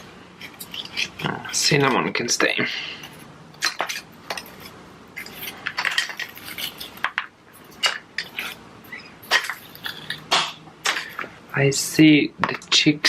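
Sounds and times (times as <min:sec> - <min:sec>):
small objects knocking and clicking: 0:03.5 - 0:11.4.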